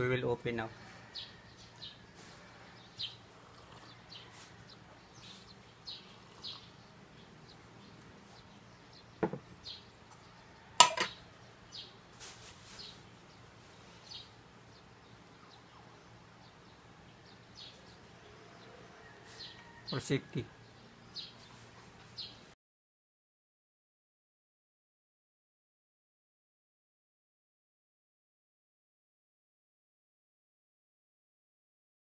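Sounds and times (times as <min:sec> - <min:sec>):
small birds chirping: 0:00.7 - 0:22.6.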